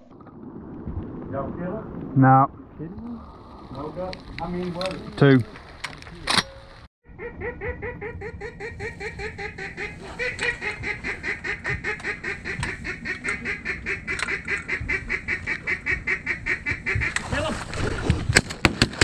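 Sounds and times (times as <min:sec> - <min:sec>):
duck quacking: 0:07.2 - 0:17.3.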